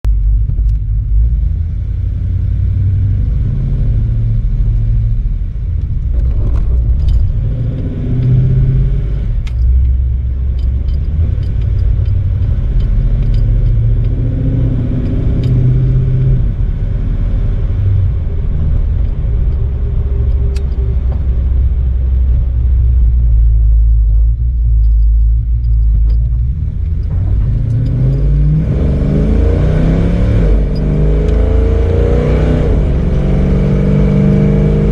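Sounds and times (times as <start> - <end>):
car engine rumbling and revving: 0.0 - 34.9
light clicks and rattles: 5.8 - 8.7, 9.4 - 16.1, 18.3 - 28.6.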